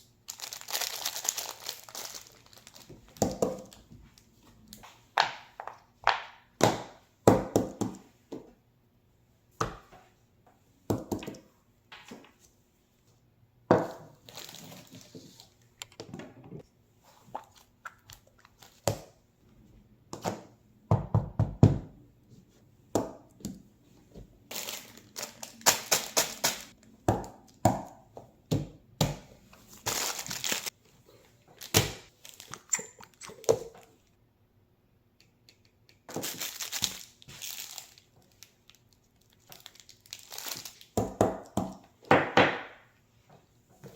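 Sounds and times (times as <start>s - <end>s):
plastic crinkling: 0.3s - 4.4s, 14.2s - 15.6s, 24.5s - 26.9s, 29.6s - 30.8s, 31.6s - 34.1s, 36.1s - 41.0s.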